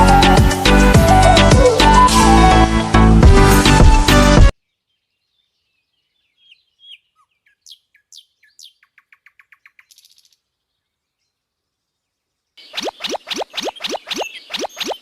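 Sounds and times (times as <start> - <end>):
faint bird song: 4.5 - 15.0.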